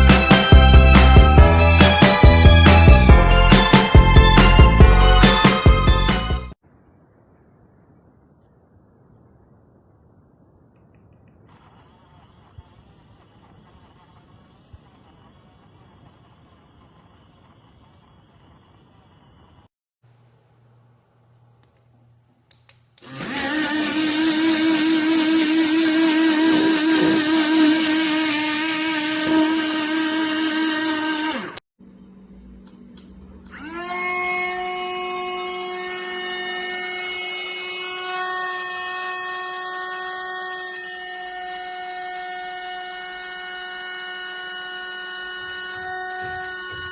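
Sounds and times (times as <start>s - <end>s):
mini blender motor whine: 11.5s - 19.6s, 23.0s - 31.6s, 33.4s - 46.9s.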